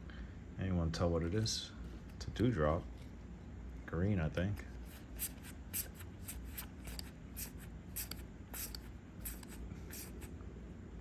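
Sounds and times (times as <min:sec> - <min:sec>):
cards swishing: 0:04.6 - 0:10.3.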